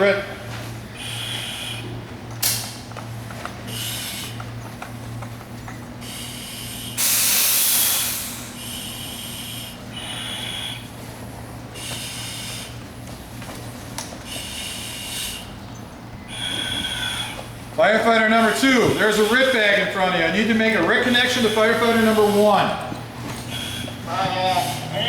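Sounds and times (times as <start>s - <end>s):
breathing regulator hissing: 0.8s - 2.8s, 3.6s - 4.5s, 6.0s - 13.0s, 13.6s - 20.3s, 21.1s - 25.0s
rushing air burst: 6.0s - 10.9s.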